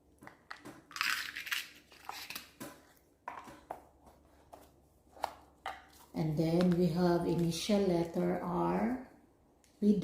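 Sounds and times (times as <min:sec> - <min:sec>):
packaging crinkling rustle: 0:00.8 - 0:02.9.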